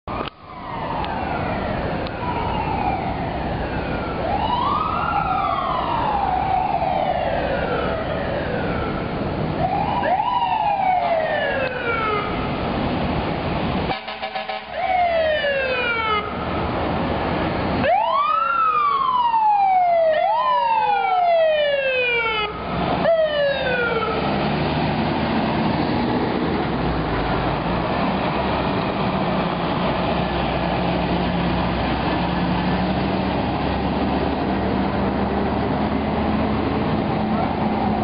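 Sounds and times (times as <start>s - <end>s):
street noise: 0.0s - 38.0s
fire truck siren: 0.1s - 38.0s.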